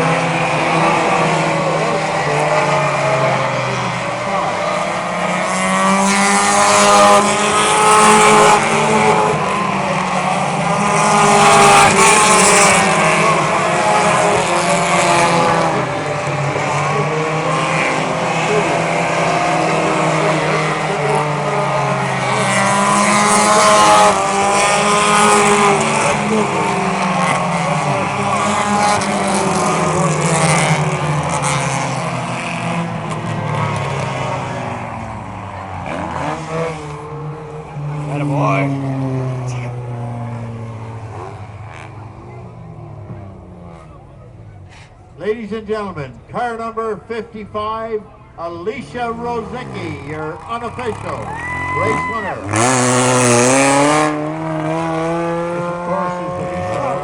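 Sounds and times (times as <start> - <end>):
race car engines revving: 0.0 - 57.0.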